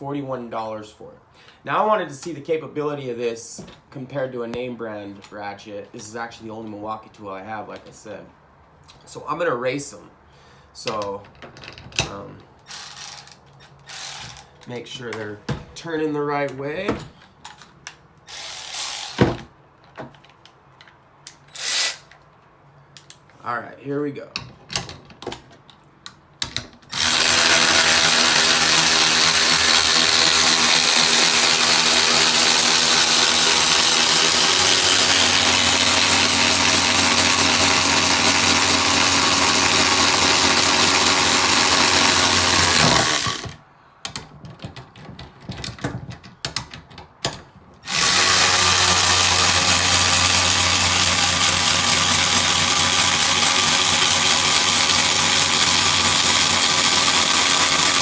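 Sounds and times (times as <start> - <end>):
cordless electric ratchets whirring: 12.7 - 14.4, 18.3 - 19.5, 21.5 - 22.1, 26.9 - 43.6, 47.9 - 58.0
ratchet clicks: 21.2 - 22.2.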